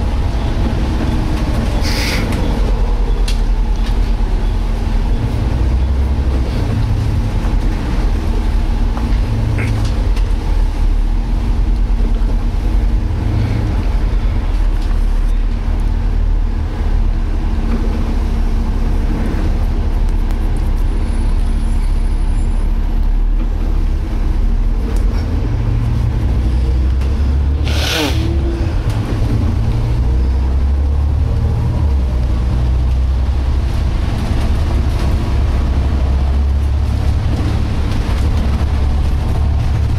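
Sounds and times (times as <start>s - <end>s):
bus engine rumble and whine: 0.0s - 39.9s
air hiss from bus: 1.8s - 2.4s, 27.6s - 28.3s.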